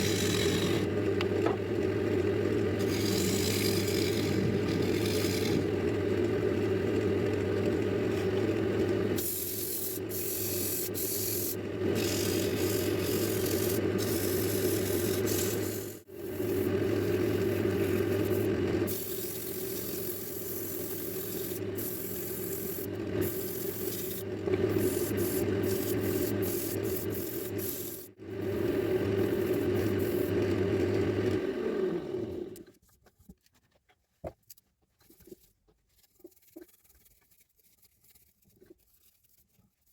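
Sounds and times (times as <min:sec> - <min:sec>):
sanding against spinning wood: 0:00.0 - 0:00.8, 0:02.8 - 0:05.6, 0:09.2 - 0:30.5
wood lathe humming: 0:00.0 - 0:32.7.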